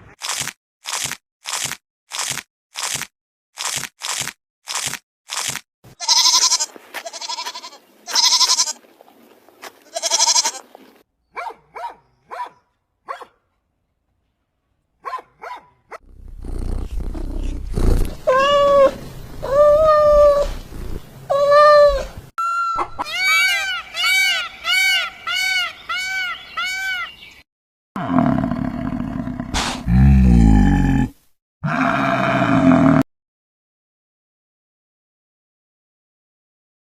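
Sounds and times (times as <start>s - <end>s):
strong pitched animal calls: 21.3s - 27.2s, 31.6s - 33.0s.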